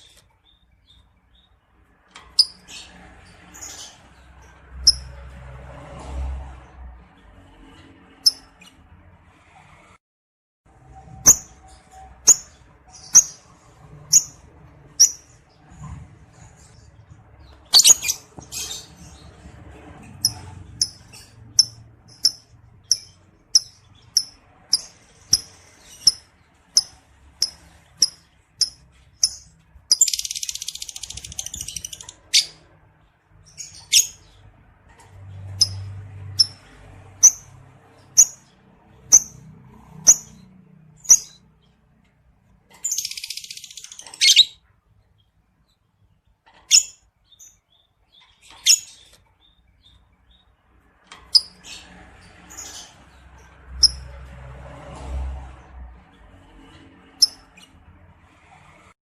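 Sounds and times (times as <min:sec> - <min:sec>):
lovebird chirping: 0:04.8 - 0:05.1, 0:11.2 - 0:14.4, 0:15.0 - 0:15.7, 0:17.7 - 0:19.2, 0:20.2 - 0:32.6, 0:33.5 - 0:34.3, 0:38.1 - 0:38.5, 0:39.1 - 0:39.4, 0:41.0 - 0:41.5, 0:42.8 - 0:44.6, 0:46.7 - 0:50.4
lovebird rattling chatter: 0:17.7 - 0:18.9, 0:20.2 - 0:32.6.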